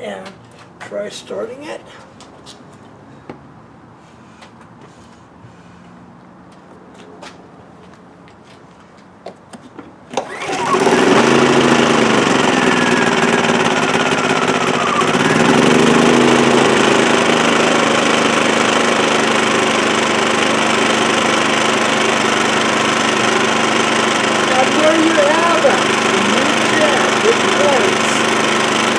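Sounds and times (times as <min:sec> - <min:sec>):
generator engine running: 0:10.2 - 0:28.9.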